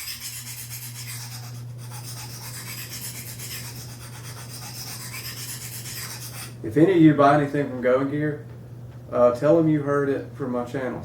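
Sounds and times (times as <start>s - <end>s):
knife scraping on sharpening plate: 0.0s - 6.6s
steady low hum: 0.0s - 11.0s.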